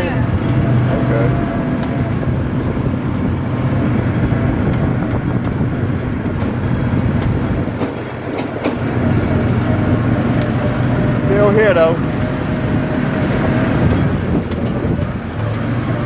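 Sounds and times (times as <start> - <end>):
quad bike engine running: 0.0 - 16.0
knocks and rattles: 3.9 - 9.4, 13.8 - 15.6.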